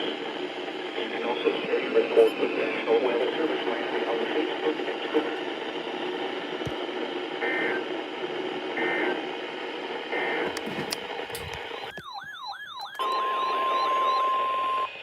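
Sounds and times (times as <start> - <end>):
radio hiss: 0.0 - 11.9
siren-like warble: 11.7 - 15.0
steady single-pitch alert tone: 11.8 - 15.0.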